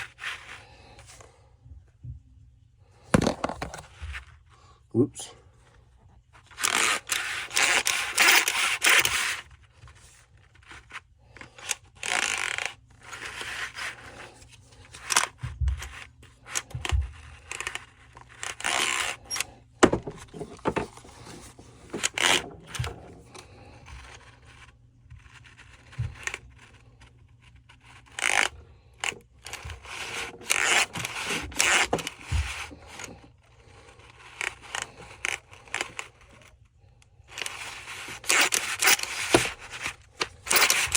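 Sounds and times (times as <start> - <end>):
dull knocks of parts: 3.1 - 4.2, 18.6 - 23.2
scraping and rustling of parts: 3.1 - 4.6, 6.0 - 40.9.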